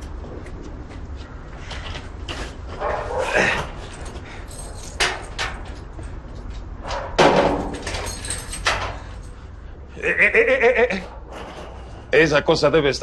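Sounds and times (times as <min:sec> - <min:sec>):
door banging: 0:06.8 - 0:09.1.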